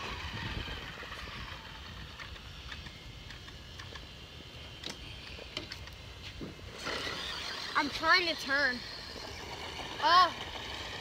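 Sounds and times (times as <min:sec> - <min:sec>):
toy car electric motor whining: 0:00.0 - 0:11.0.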